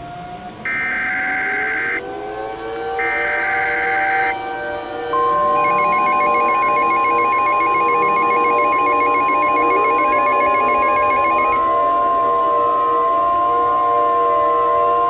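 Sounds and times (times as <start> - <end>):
pulsing ringing electronic alert tone: 5.6 - 11.6
steady alarm tone: 5.6 - 11.6.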